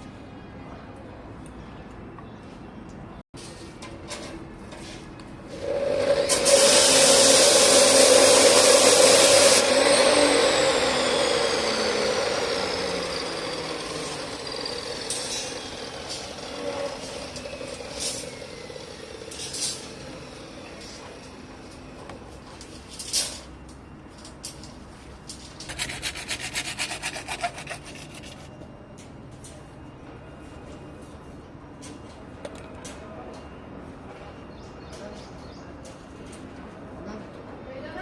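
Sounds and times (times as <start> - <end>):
motor winding down whine: 5.6 - 21.8
water pump motor humming: 6.5 - 19.3.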